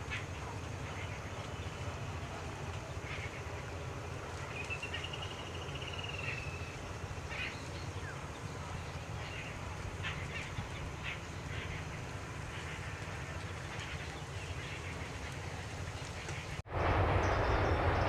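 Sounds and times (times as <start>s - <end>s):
low rumble: 16.6s - 18.0s.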